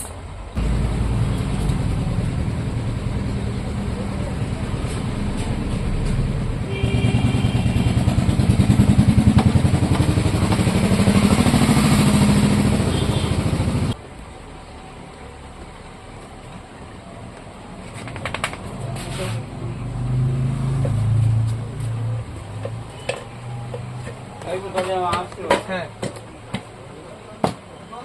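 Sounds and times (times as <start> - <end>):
motorcycle engine running: 6.7 - 14.0.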